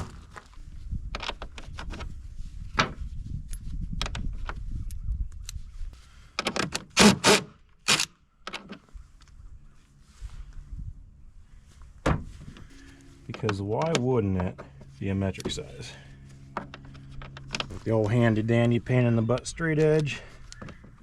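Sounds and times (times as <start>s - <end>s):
hand tools clicking and clanking: 13.2s - 18.4s.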